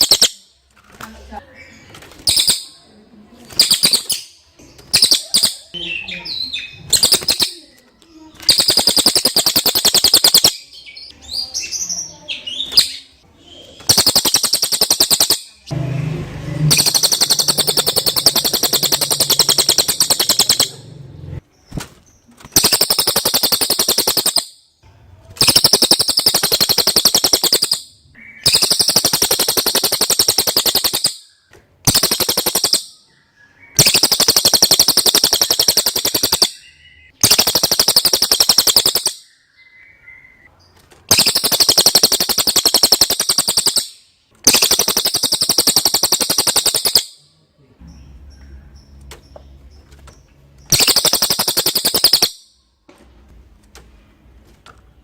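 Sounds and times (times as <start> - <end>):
songbird trilling: 0.0 - 0.4, 3.5 - 4.3, 4.9 - 7.6, 8.4 - 11.1, 13.8 - 15.7, 16.7 - 21.0, 22.6 - 24.6, 25.4 - 40.5, 41.1 - 47.2, 50.7 - 52.4.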